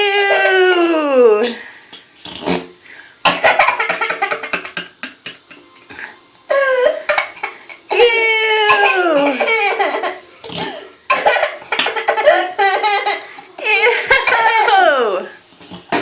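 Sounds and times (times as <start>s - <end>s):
toddler laughing: 8.7s - 10.2s, 11.1s - 13.3s, 13.9s - 14.8s.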